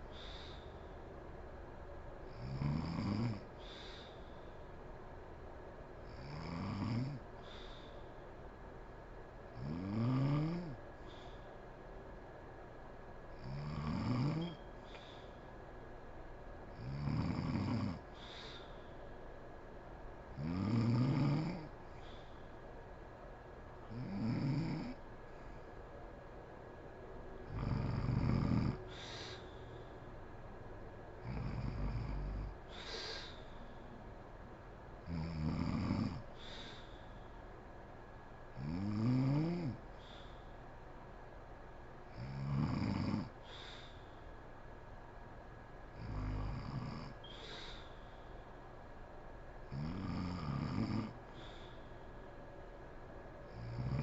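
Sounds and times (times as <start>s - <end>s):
woman snoring: 2.3s - 4.1s, 6.1s - 7.9s, 9.6s - 11.2s, 13.3s - 14.6s, 16.8s - 18.7s, 20.4s - 21.7s, 23.9s - 25.0s, 27.5s - 29.4s, 31.2s - 33.4s, 35.0s - 36.9s, 38.6s - 39.8s, 42.1s - 43.9s, 46.0s - 47.8s, 49.7s - 51.6s, 53.5s - 54.0s
short breathy hiss: 18.2s - 19.0s, 28.9s - 29.9s, 32.7s - 33.9s, 36.4s - 37.3s, 43.4s - 44.2s, 47.2s - 48.4s.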